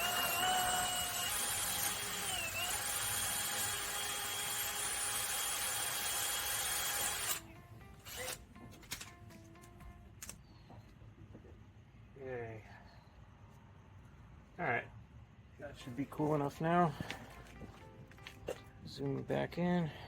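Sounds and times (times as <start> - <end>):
handheld power tool whirring: 0.0 - 8.4.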